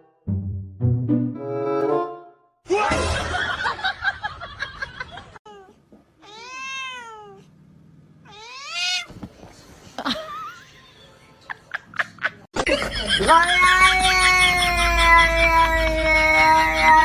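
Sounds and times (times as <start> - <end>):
cat meowing: 5.5 - 7.5, 8.2 - 9.1, 13.5 - 17.0.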